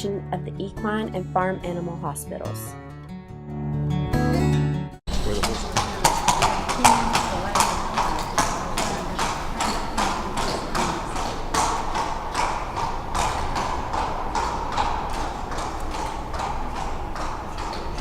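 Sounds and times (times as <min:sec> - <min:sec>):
horse hooves on hard floor: 0:05.1 - 0:18.0.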